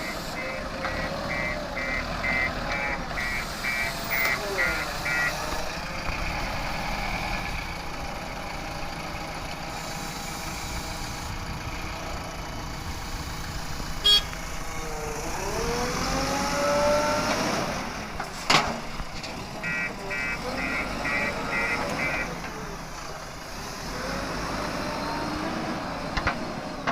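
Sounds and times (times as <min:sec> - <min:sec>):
short sharp horn toot: 0:00.0 - 0:05.4, 0:14.0 - 0:14.4, 0:19.6 - 0:22.3
heavy diesel engine revving: 0:00.0 - 0:26.9.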